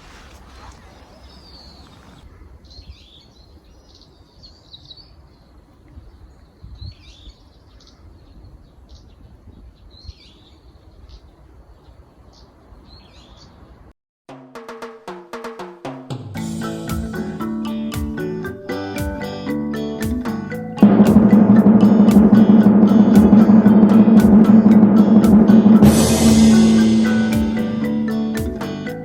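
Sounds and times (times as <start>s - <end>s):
songbird singing: 0.5s - 13.9s.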